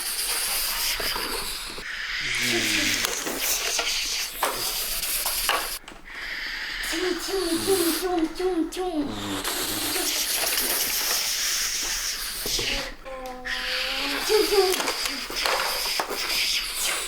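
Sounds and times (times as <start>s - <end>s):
child making hissing mouth noises: 0.0s - 17.0s
child making wavering voiced tones: 6.8s - 10.4s, 12.6s - 15.3s.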